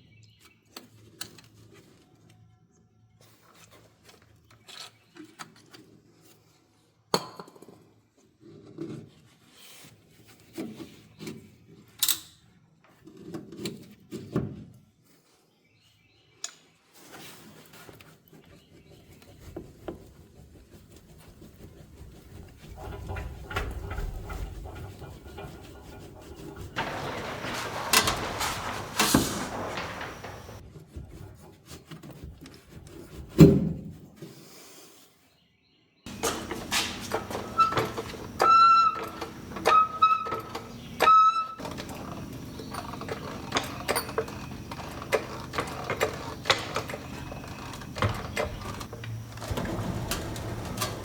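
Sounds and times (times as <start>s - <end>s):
scraping or rubbing: 18.6s - 33.3s, 36.1s - 51.0s
tools knocking and clattering: 22.6s - 30.6s, 36.1s - 51.0s.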